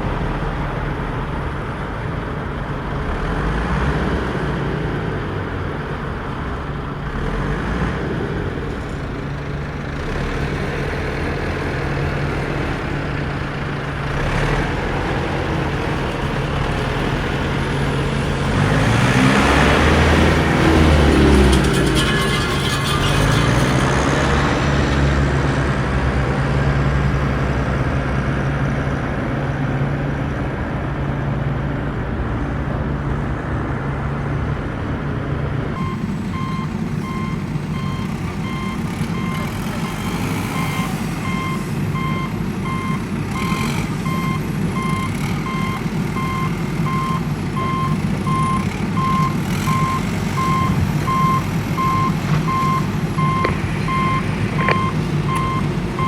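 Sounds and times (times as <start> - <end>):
outdoor noise: 0.0 - 56.0
vehicle engine running: 0.0 - 56.0
reversing alarm beeping: 35.8 - 56.0.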